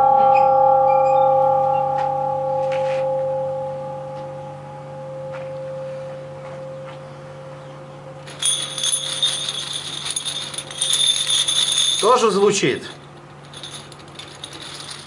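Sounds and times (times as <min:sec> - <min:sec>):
church bell ringing: 0:00.0 - 0:07.8
high metallic jingling: 0:08.2 - 0:15.0.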